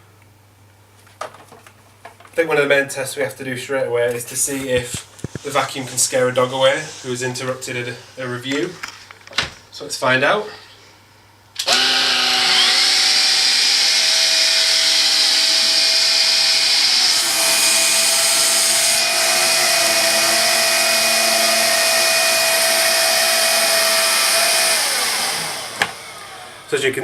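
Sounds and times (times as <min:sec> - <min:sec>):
vacuum cleaner running: 0:11.6 - 0:27.0.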